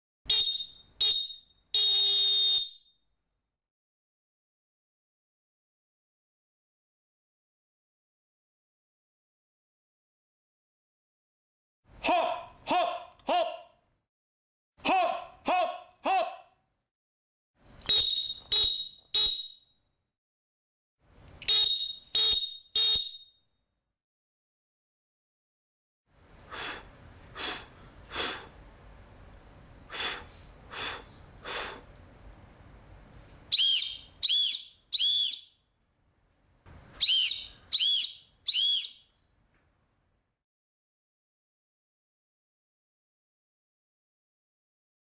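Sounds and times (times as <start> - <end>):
referee whistle blasts: 0.3 - 2.9, 17.8 - 19.6, 21.4 - 23.3, 33.5 - 35.5, 37.0 - 39.0.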